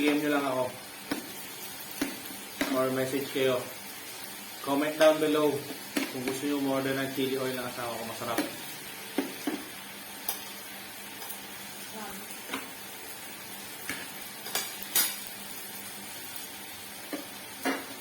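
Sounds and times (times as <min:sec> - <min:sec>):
meat sizzling on a grill: 0:00.0 - 0:18.0
utensils clinking against dishes: 0:13.9 - 0:15.3.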